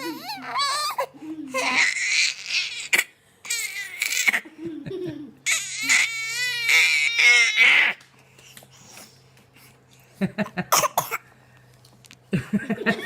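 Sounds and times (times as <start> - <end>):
baby crying: 0.0 - 4.4, 5.4 - 8.0.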